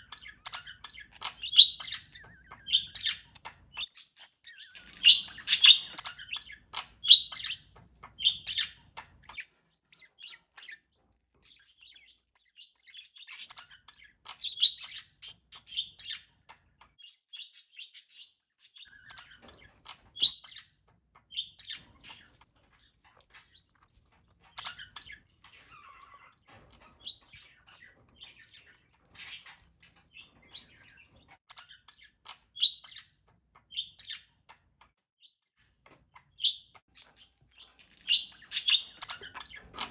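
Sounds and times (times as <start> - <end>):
parakeet chirping: 0.0 - 35.4, 36.1 - 39.9.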